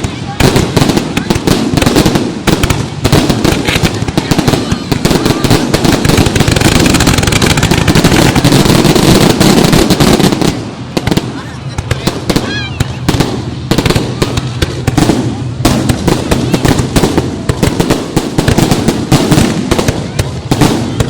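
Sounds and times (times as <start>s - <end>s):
fireworks bangs and crackling: 0.0s - 21.0s.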